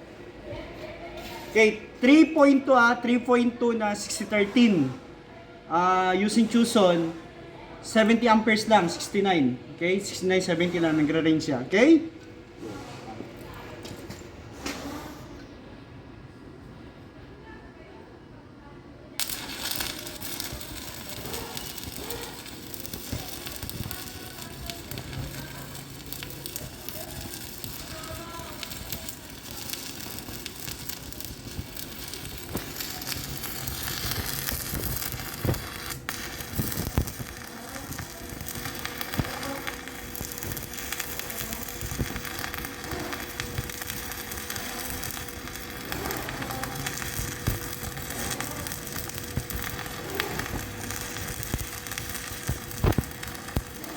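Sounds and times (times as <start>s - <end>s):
sharp welding pops: 19.2s - 53.9s
welding arc crackling: 19.2s - 53.9s.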